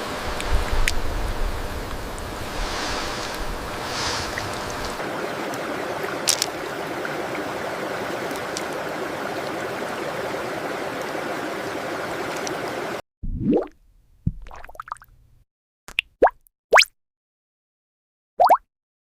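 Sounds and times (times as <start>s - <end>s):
stream rushing: 0.0s - 13.0s.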